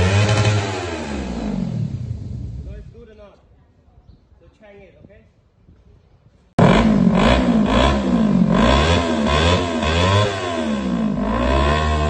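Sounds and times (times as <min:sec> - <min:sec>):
motorcycle engine revving: 0:00.0 - 0:02.8, 0:06.6 - 0:12.0.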